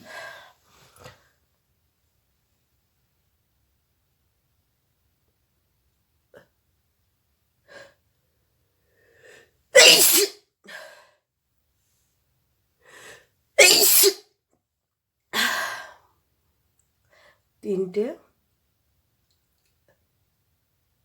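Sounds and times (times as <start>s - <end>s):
woman sneezing: 9.8s - 10.4s, 13.6s - 14.2s.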